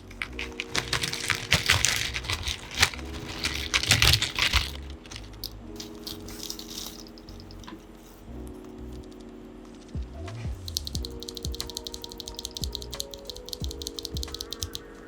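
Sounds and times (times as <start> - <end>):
soft background music: 0.0 - 15.0
mechanical keyboard switches clicking: 10.7 - 14.8.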